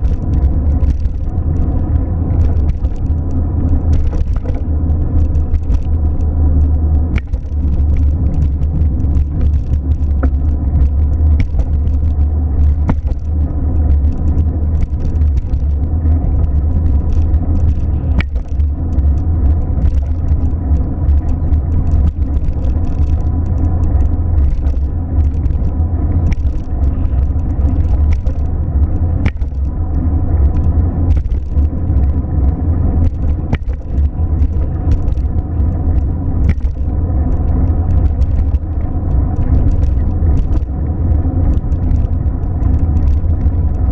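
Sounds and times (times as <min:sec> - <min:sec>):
car low rumble: 0:00.0 - 0:43.9
faint ticks: 0:00.0 - 0:43.9.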